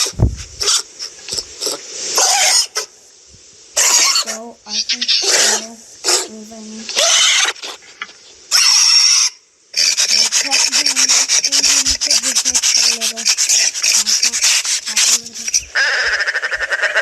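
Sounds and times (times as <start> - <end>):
scratchy rubbing: 9.8 - 15.8.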